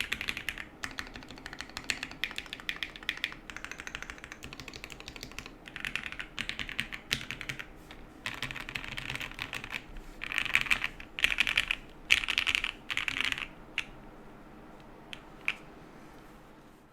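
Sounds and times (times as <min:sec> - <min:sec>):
mechanical keyboard typing: 0:00.0 - 0:13.9.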